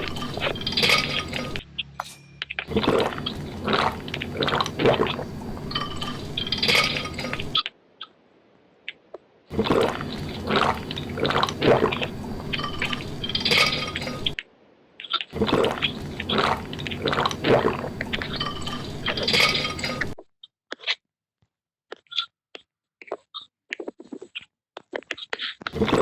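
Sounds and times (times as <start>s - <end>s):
person drinking and swallowing: 0.0s - 1.6s, 2.7s - 7.6s, 9.5s - 14.4s, 15.4s - 20.2s, 25.8s - 26.0s.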